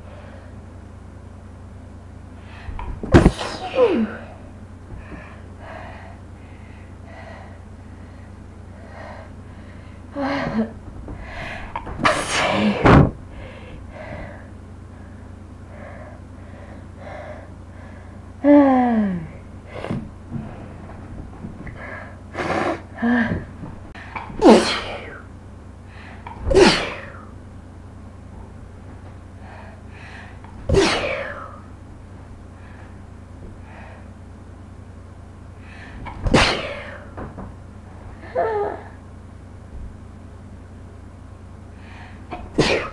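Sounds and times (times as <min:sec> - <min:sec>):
woman sneezing: 0:03.2 - 0:04.4, 0:12.0 - 0:12.9, 0:24.3 - 0:25.2, 0:26.5 - 0:27.3, 0:30.7 - 0:31.6, 0:36.2 - 0:37.1, 0:42.4 - 0:42.9.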